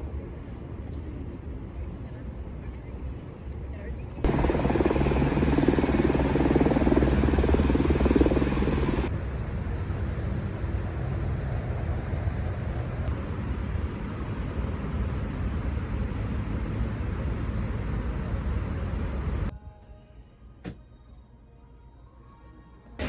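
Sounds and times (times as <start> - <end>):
vehicle engine rumbling: 0.0 - 9.1
traffic engine noise: 0.0 - 19.5.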